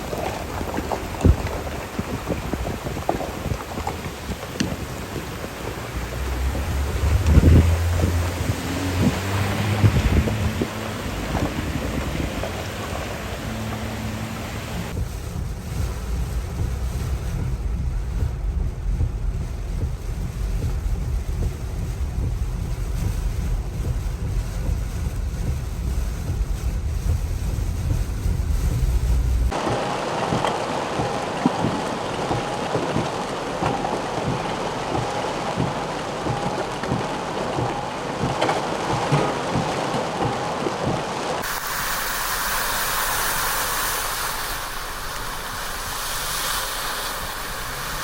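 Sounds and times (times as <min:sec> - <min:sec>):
wind buffeting microphone: 0:00.0 - 0:29.7
rushing water: 0:00.0 - 0:48.0.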